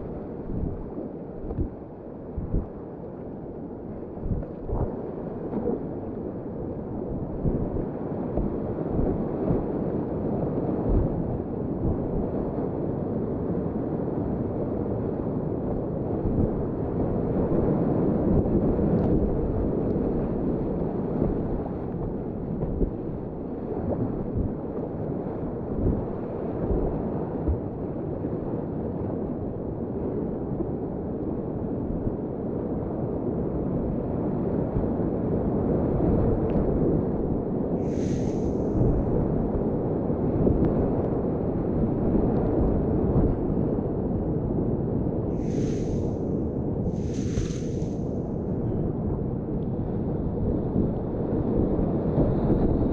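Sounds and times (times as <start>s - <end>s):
wind buffeting microphone: 0.0s - 3.0s, 15.2s - 27.9s, 35.8s - 52.9s.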